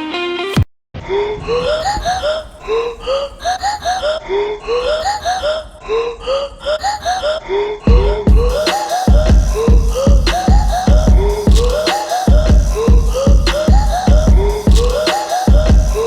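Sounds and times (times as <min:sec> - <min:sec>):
breathy vocal chops: 0:07.9 - 0:16.0
electronic music: 0:07.9 - 0:16.0.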